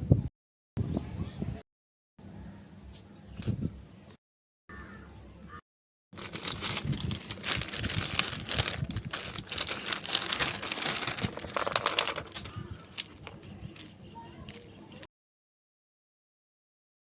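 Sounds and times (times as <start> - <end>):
packaging crinkling: 6.2 - 13.9.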